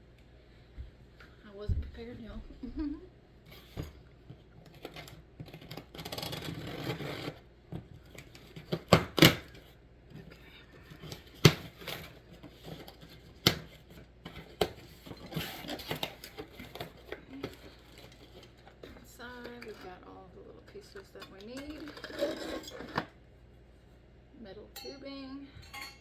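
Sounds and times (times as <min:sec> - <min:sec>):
packaging rustling and tearing: 0:10.8 - 0:19.0.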